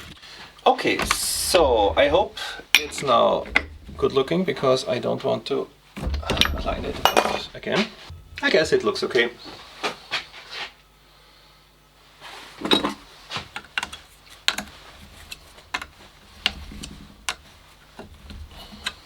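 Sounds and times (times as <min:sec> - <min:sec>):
faint low hum: 0:00.0 - 0:12.4
metal tools clinking: 0:06.1 - 0:08.2.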